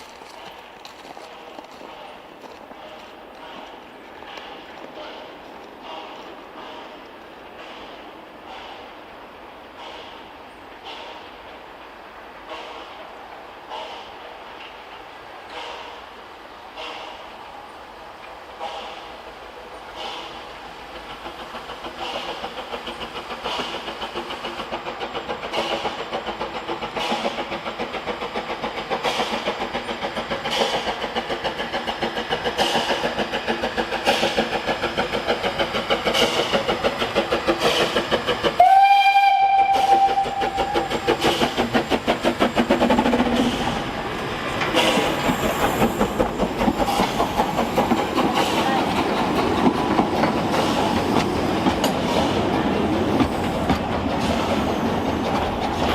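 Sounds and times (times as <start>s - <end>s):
wheels clicking over rail joints: 0.0s - 7.8s, 19.8s - 55.9s
steam locomotive running: 0.0s - 55.9s
steam whistle blast: 38.6s - 40.9s.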